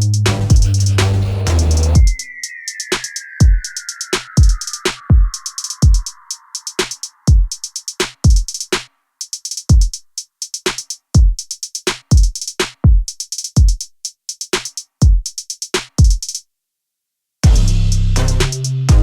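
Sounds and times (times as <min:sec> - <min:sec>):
deep kick drums: 0:00.0 - 0:01.3, 0:12.1 - 0:13.8, 0:17.4 - 0:17.9
electronic music: 0:00.0 - 0:08.7
hi-hat runs: 0:00.0 - 0:16.4, 0:17.4 - 0:19.0.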